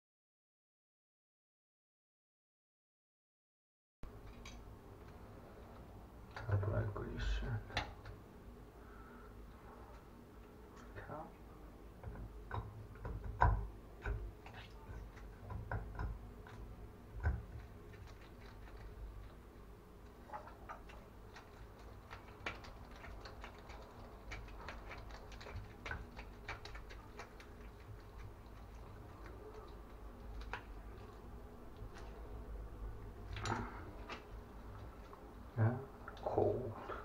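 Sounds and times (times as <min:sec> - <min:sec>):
clicks and taps of tools: 0:15.4 - 0:16.2.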